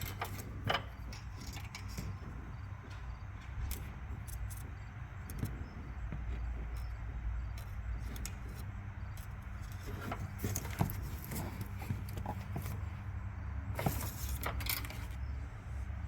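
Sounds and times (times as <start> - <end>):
light clicks and rattles: 13.8 - 15.3.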